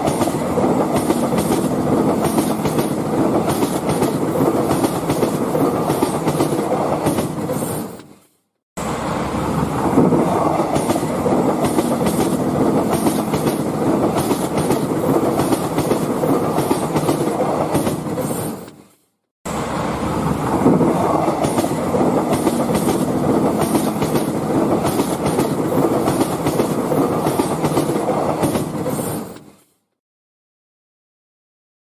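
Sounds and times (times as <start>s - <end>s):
train wheels clacking on rails: 0.0s - 8.1s, 10.5s - 18.8s, 20.7s - 29.6s.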